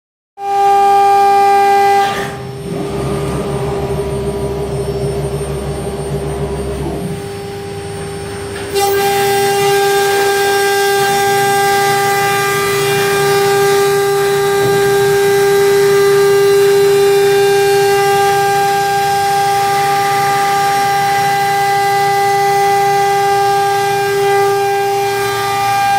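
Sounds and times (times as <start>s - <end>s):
router spindle whining: 1.7s - 25.9s
low rumble: 2.6s - 8.6s.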